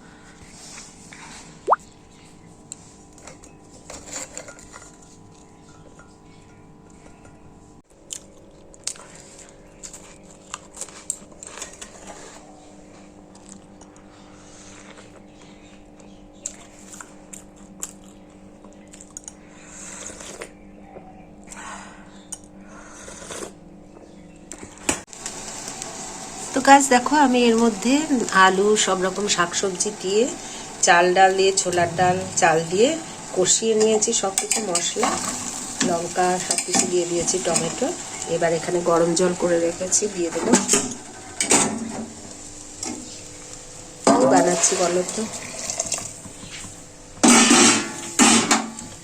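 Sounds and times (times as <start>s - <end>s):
steady background hum: 0.0s - 49.0s
biscuits crunching: 7.9s - 12.4s, 13.0s - 20.6s.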